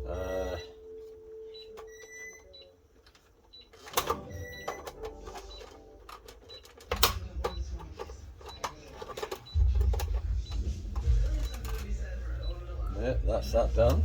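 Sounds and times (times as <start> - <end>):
plastic parts clicking: 3.0 - 10.3.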